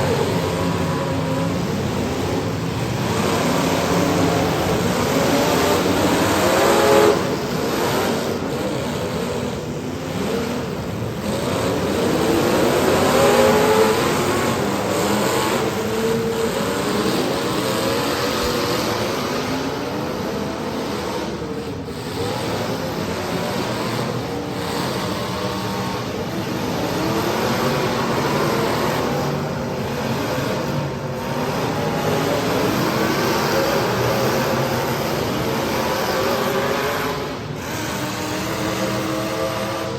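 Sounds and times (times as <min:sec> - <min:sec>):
car engines revving: 0:00.0 - 0:39.9.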